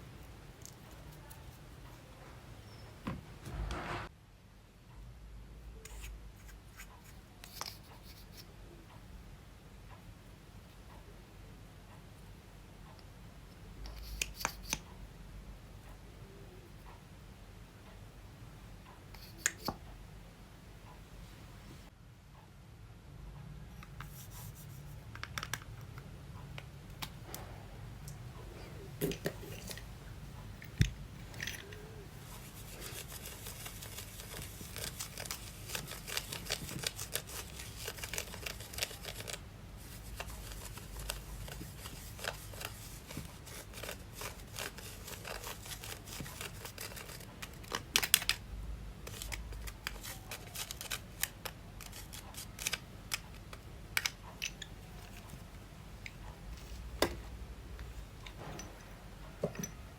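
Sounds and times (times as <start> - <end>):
sticky clicks and crackles: 32.7 - 48.4.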